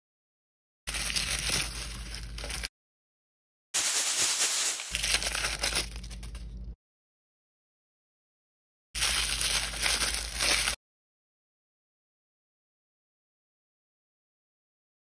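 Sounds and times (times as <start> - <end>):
plastic packaging tearing and crinkling: 0.9 - 2.7, 3.8 - 6.6, 9.0 - 10.8.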